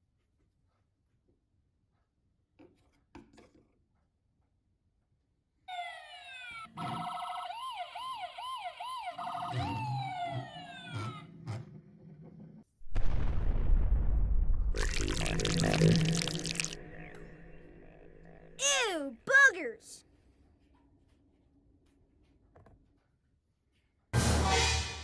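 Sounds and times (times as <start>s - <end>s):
electronic police siren: 5.7s - 11.2s.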